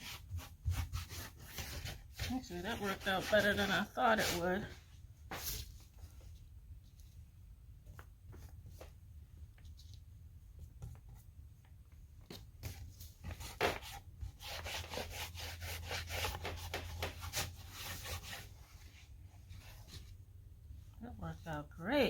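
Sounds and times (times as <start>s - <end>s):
cloth rubbing on wood: 0.0s - 5.6s.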